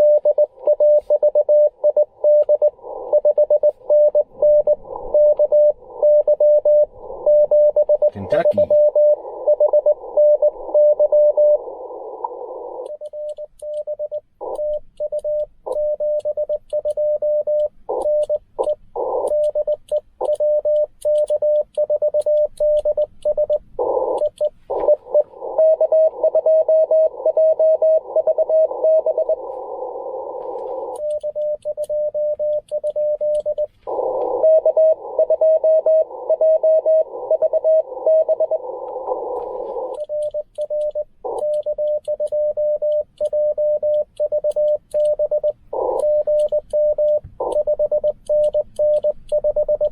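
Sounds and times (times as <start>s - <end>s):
radio band hiss: 8.1s - 10.8s, 23.8s - 26.4s, 28.0s - 31.0s, 33.8s - 40.0s, 45.7s - 46.2s
morse code tone: 12.9s - 49.9s.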